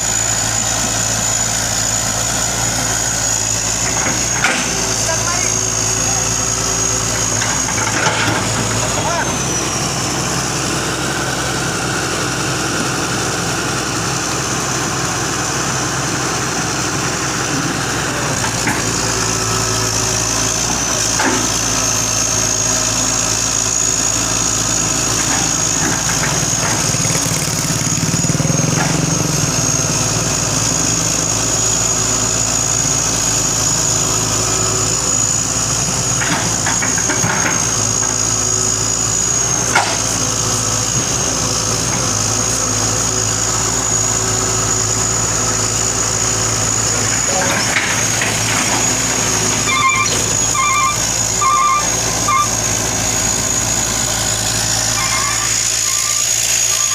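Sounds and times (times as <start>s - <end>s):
excavator diesel engine running: 0.0s - 56.9s
high-pitched whine: 42.4s - 56.9s.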